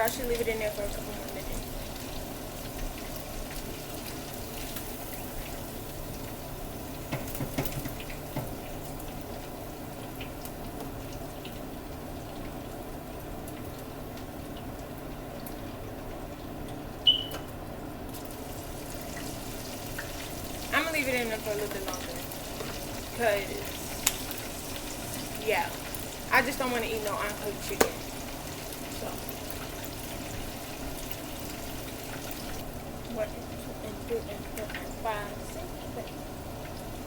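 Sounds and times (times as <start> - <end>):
chicken frying in a pan: 0.0 - 37.0
short high ping: 17.0 - 17.4.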